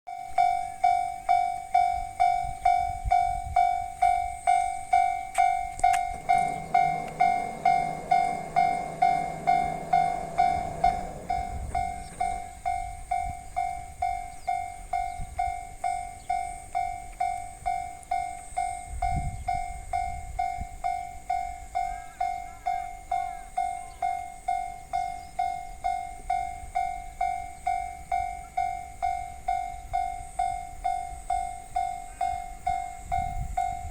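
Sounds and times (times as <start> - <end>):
level crossing warning bell: 0.1 - 33.9
train rumble: 0.1 - 33.9
sustained pitched tone: 3.7 - 14.9.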